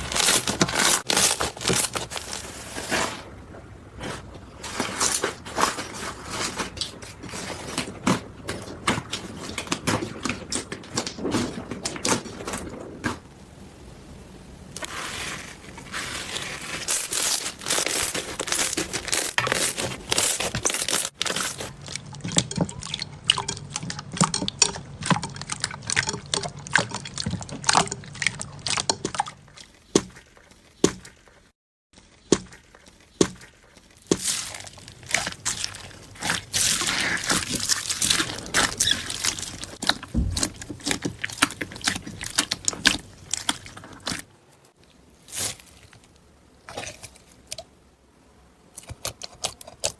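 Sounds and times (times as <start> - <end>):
slime crackling and squelching: 0.0 - 3.2, 14.8 - 47.7.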